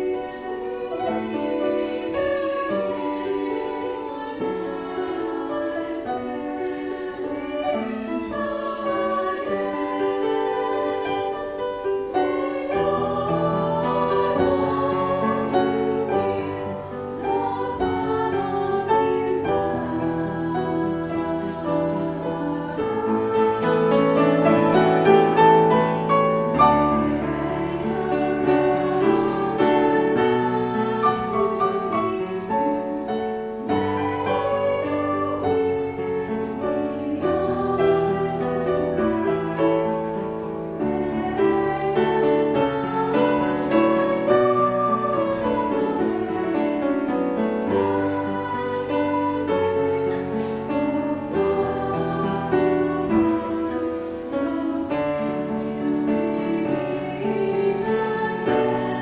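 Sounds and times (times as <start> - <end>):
slow piano piece: 0.0 - 59.0.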